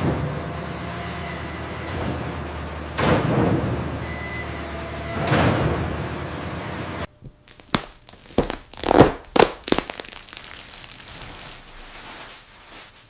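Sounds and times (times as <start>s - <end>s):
sharp knocks and cracks: 7.2s - 10.6s.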